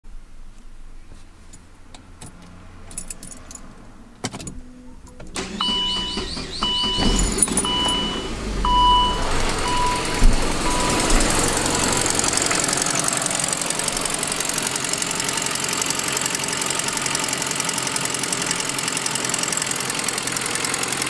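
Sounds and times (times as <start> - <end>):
car engine cranking and running: 1.9 - 21.0
keys jingling in ignition: 2.2 - 12.6
dashboard warning chime: 5.4 - 12.3
exhaust leak ticking: 5.4 - 21.0.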